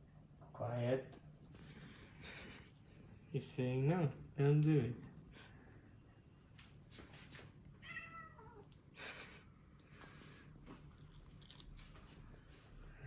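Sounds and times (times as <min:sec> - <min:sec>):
soft rustles: 0:06.6 - 0:07.6
cat meowing: 0:07.8 - 0:08.7.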